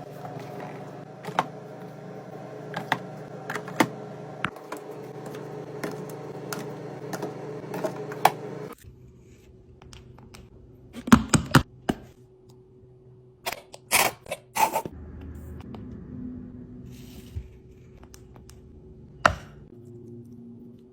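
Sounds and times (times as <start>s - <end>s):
soft hum: 0.0s - 10.9s.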